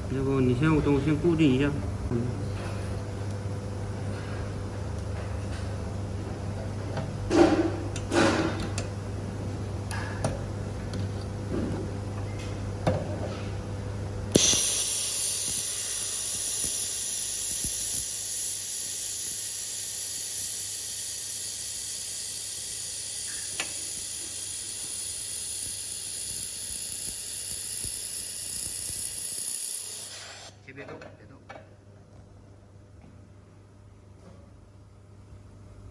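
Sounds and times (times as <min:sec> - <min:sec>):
low machine hum: 0:00.0 - 0:29.4
laser welder hissing: 0:14.3 - 0:30.5.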